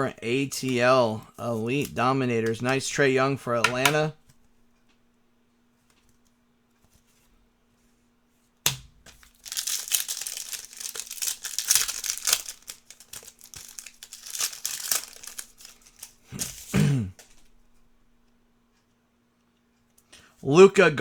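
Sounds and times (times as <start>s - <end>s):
plastic wrapper tearing and crinkling: 9.1s - 17.5s.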